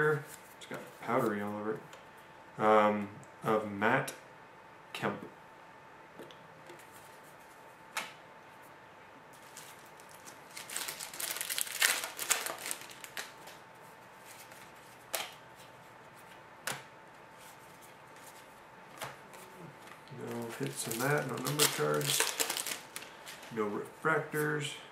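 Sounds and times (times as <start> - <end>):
faint steady hum: 0.0 - 24.9
foil pack crackling and rustling: 9.4 - 13.6, 18.2 - 23.6.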